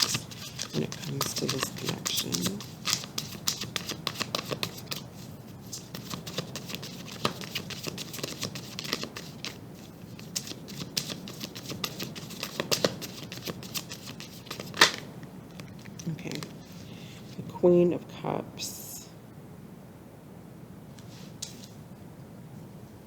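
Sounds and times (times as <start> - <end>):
cards being shuffled: 0.0 - 16.9.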